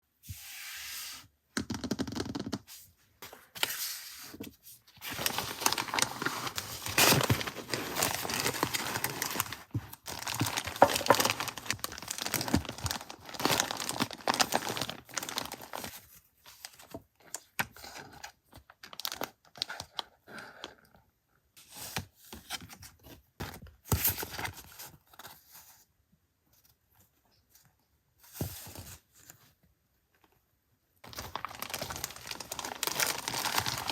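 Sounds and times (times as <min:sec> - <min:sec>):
wrapping paper crinkling and tearing: 0:05.0 - 0:16.0, 0:18.8 - 0:19.9, 0:31.0 - 0:33.9.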